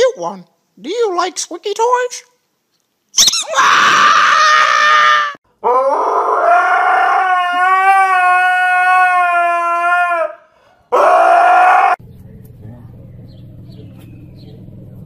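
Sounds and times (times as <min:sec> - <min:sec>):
dog howling: 0:03.4 - 0:12.0.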